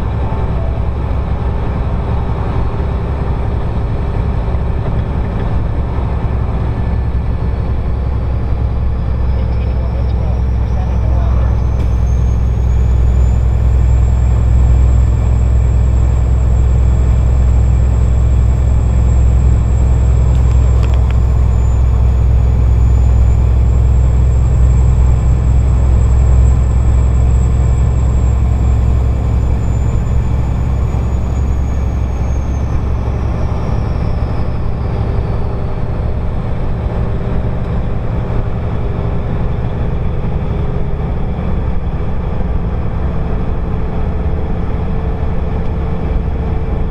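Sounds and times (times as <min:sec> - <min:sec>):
engine drone: 0:00.0 - 0:46.9
road noise: 0:00.0 - 0:46.9
turbocharger whistling: 0:06.9 - 0:37.8.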